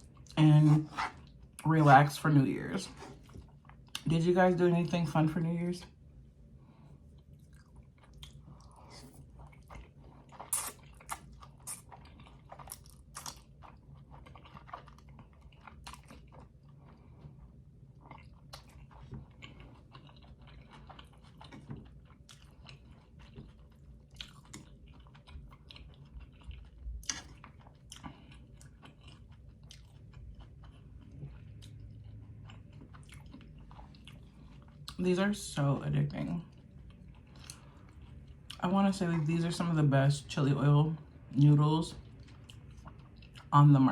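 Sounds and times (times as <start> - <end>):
person chewing: 0.0 - 4.2, 6.6 - 35.0, 36.2 - 38.7, 42.0 - 43.6
wet mouth clicks: 10.5 - 11.8.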